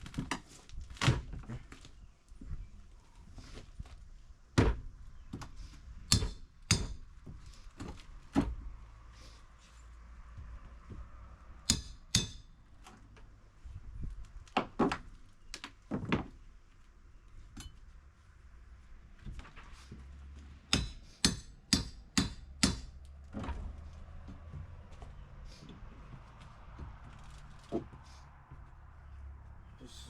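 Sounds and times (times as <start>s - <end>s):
hammer striking wooden boards: 11.7s - 12.5s, 20.7s - 22.9s.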